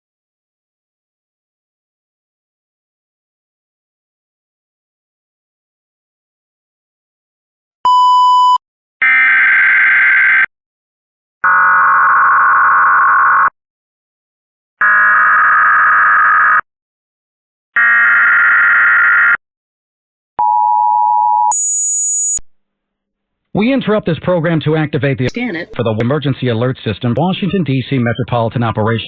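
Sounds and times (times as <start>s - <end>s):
short beep: 7.9s - 8.6s.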